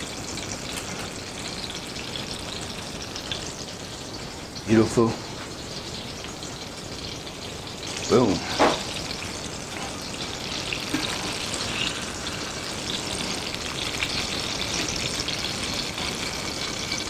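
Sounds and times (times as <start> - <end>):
deep-frying in hot oil: 0.0 - 17.0
oil popping: 4.8 - 17.0.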